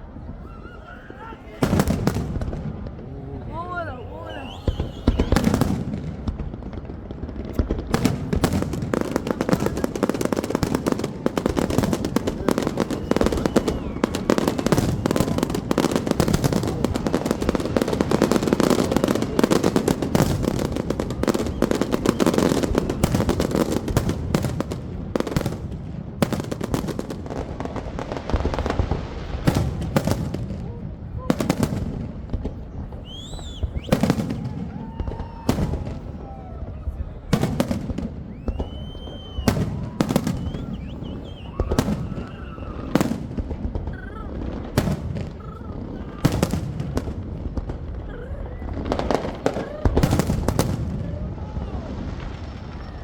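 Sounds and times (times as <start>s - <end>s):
fireworks crackling bangs: 0.1s - 53.0s.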